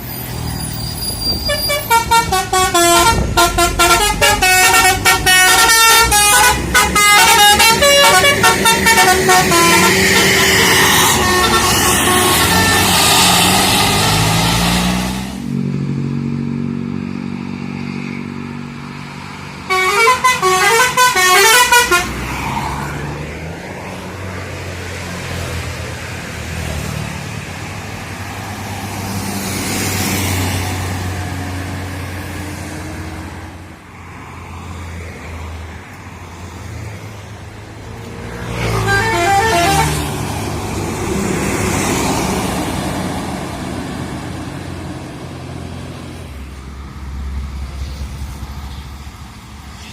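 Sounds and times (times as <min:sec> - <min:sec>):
buses passing: 0:00.0 - 0:49.9
musical bus horn: 0:01.2 - 0:14.5, 0:19.7 - 0:22.3, 0:38.4 - 0:40.3.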